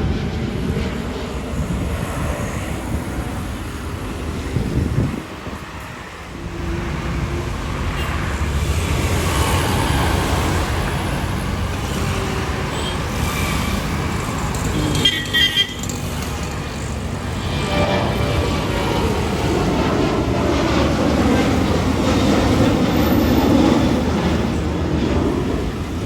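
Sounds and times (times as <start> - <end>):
road traffic rumble: 0.0 - 26.0.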